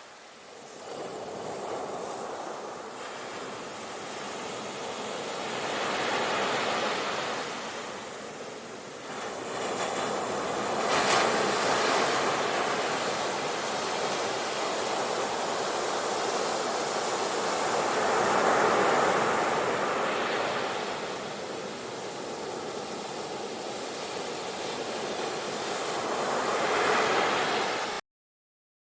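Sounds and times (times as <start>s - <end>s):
ocean waves breaking: 0.4s - 28.0s.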